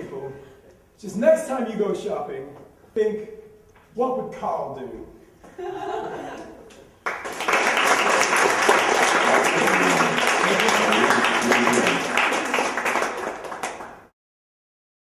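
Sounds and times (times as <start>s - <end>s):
audience applauding: 7.0s - 14.1s.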